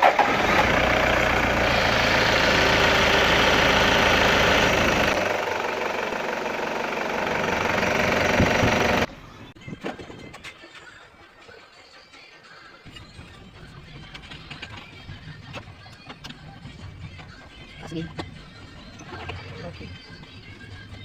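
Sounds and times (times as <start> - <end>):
diesel engine idling: 0.0 - 9.1.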